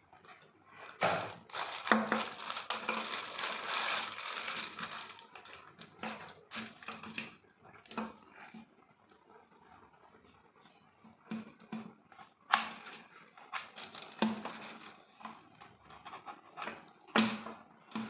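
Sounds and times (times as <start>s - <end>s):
packaging crinkling and rustling: 1.0s - 7.4s, 12.6s - 15.5s.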